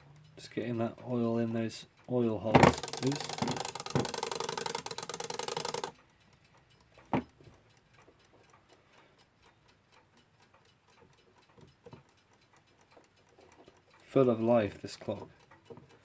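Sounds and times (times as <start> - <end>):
clock ticking softly: 0.0 - 16.0
alarm clock bell ringing: 2.7 - 6.0.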